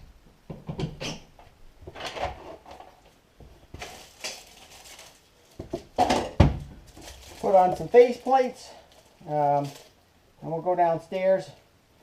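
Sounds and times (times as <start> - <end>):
scraping and rustling of handling: 1.0 - 10.0.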